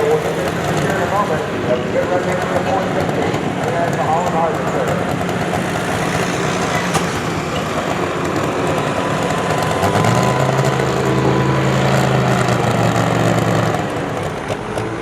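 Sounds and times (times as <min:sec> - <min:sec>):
tractor engine running: 0:00.0 - 0:15.0
deep engine note: 0:04.6 - 0:15.0.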